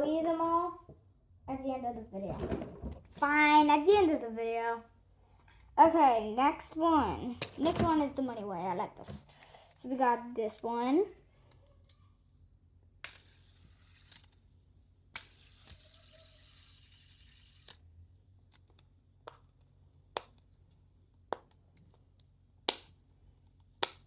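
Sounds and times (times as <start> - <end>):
fidget toy rustling: 13.0 - 18.9
fidget toy clicks: 15.1 - 17.8.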